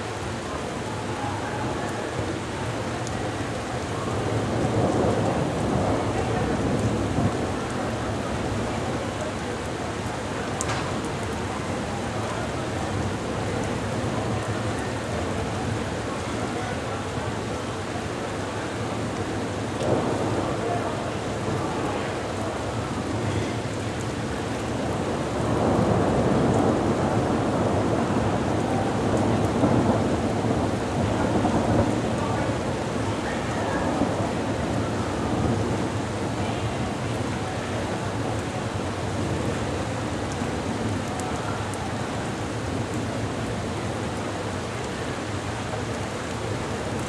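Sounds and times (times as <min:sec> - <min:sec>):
heavy rain pouring: 0:00.0 - 0:47.0
thunder rumbling: 0:04.1 - 0:09.6, 0:19.0 - 0:44.3
faint drop ticks: 0:10.6 - 0:10.9.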